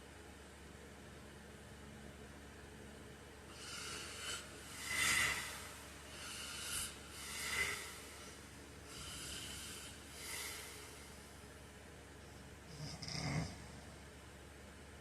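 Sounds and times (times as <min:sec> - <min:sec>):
man breathing noisily in sleep: 0:03.5 - 0:11.4.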